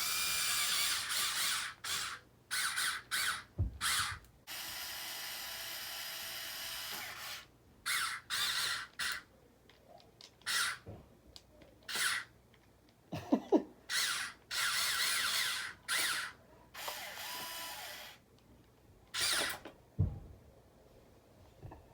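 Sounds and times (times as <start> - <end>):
small electric motors whirring: 0.0 - 9.3, 10.4 - 10.8, 11.9 - 12.3, 13.9 - 18.2, 19.1 - 19.7
dull thump: 3.6 - 4.2, 20.0 - 20.4.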